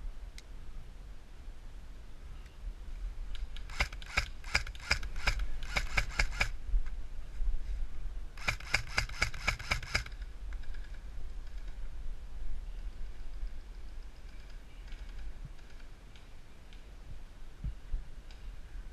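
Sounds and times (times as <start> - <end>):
airsoft rifle rapid shots: 3.6 - 6.6, 8.4 - 10.2.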